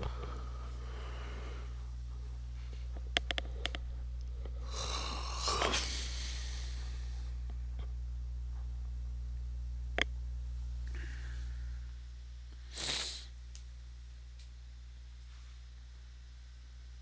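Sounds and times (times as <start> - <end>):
low electrical hum: 0.0 - 17.0.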